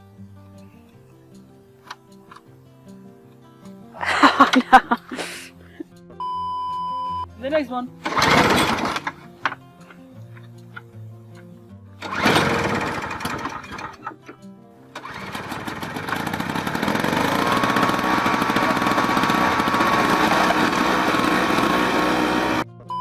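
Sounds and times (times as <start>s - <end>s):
background music: 0.0s - 16.4s, 17.4s - 23.0s
loud engine burst: 8.0s - 9.2s, 12.0s - 14.1s, 15.0s - 22.6s
snowblower engine running: 8.0s - 9.6s, 12.0s - 14.4s, 15.0s - 22.7s.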